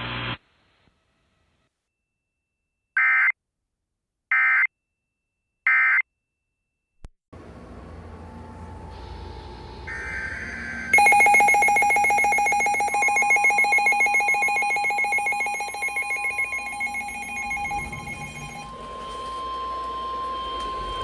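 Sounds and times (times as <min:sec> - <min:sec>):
rapidly pulsing alarm beep: 0:09.9 - 0:21.0
steady single tone: 0:09.9 - 0:21.0.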